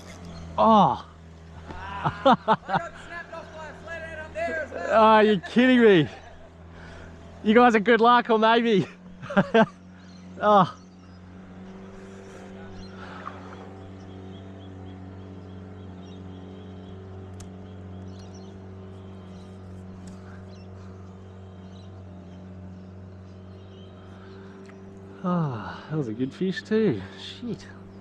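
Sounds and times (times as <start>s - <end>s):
low motor hum: 0.0s - 28.0s
faint ticks: 17.2s - 18.4s, 19.3s - 21.2s, 24.6s - 24.8s.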